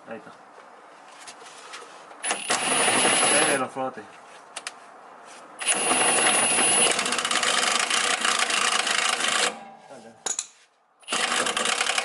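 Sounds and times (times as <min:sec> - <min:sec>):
cordless power tool whining and rattling: 0:02.2 - 0:03.6, 0:05.6 - 0:09.6, 0:11.1 - 0:12.0.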